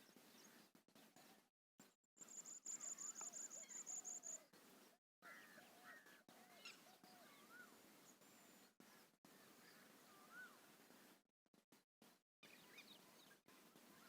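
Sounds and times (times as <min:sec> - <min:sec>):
birds whistling and chirping: 0:02.2 - 0:04.5, 0:10.1 - 0:10.6.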